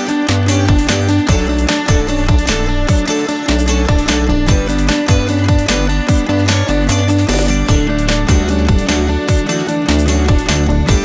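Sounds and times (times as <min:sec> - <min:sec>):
upbeat music with drums and bass: 0:00.0 - 0:11.0.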